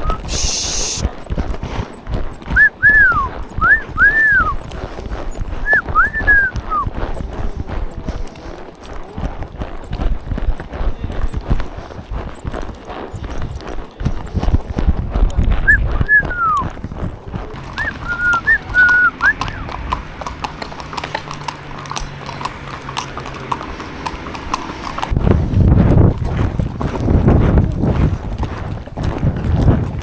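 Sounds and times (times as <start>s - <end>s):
short whistled notes: 0.0s - 1.1s, 2.6s - 4.6s, 5.7s - 6.9s, 15.7s - 16.7s, 17.8s - 19.8s
horse hooves on trail: 0.0s - 30.0s.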